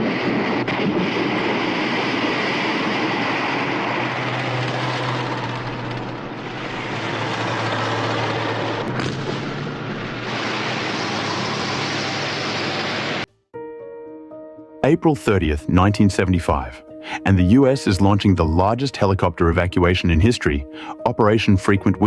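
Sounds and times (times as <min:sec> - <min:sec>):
sharp crack: 0:00.0 - 0:11.1
aircraft engines roaring: 0:00.0 - 0:13.3
low hum: 0:00.0 - 0:13.3.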